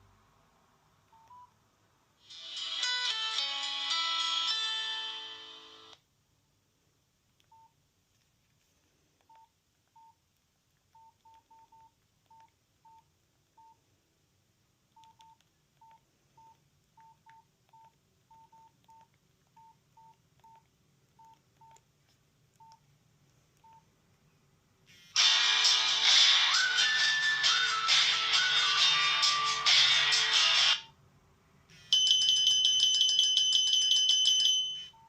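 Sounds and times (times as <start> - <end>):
phone keypad beeps: 22.6 - 22.8.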